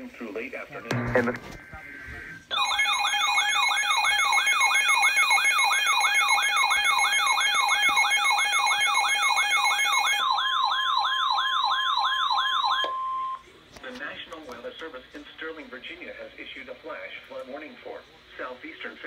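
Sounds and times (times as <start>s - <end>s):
steady alert tones: 0.9s - 1.7s
emergency alert siren whooping: 2.5s - 13.2s.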